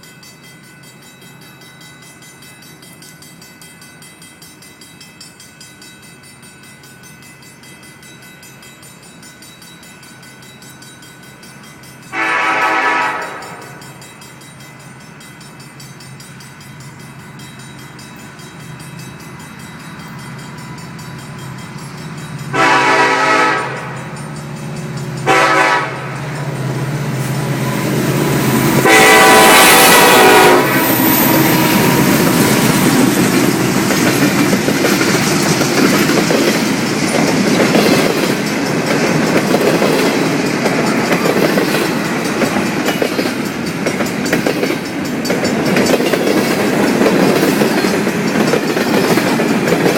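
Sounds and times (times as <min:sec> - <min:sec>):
train wheels clattering on rails: 0:00.0 - 0:49.9
train horn blasts: 0:12.1 - 0:14.0, 0:22.5 - 0:24.1, 0:25.2 - 0:26.3, 0:28.8 - 0:32.4
diesel locomotive rumble: 0:20.0 - 0:49.9.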